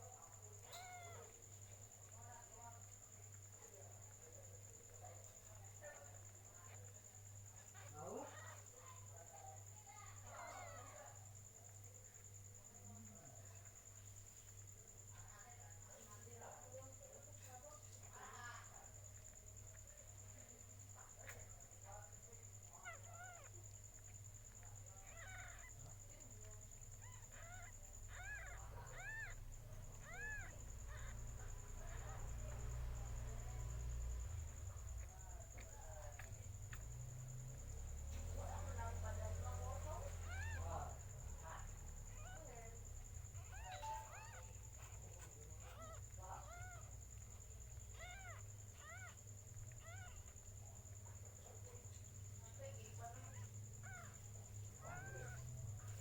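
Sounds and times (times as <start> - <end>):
kittens mewing: 0.0 - 2.2, 3.4 - 12.3, 21.1 - 56.0
cat mewing: 0.6 - 1.5, 25.0 - 32.7, 40.0 - 41.2, 42.0 - 50.6, 53.2 - 56.0.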